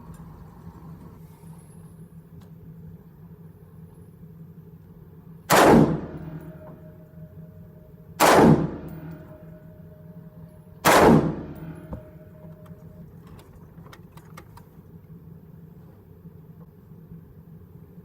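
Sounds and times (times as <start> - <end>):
rifle shots: 5.5 - 6.7, 8.2 - 9.5, 10.8 - 12.2.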